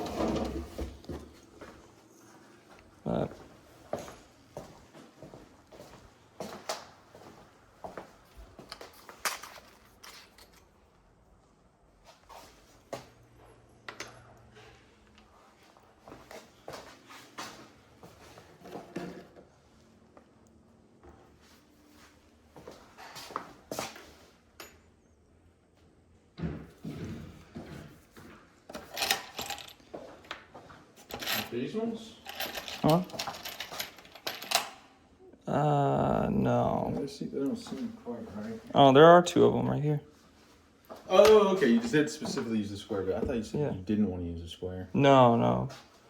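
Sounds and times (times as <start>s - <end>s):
tools and hardware clicking: 8.7s - 10.7s.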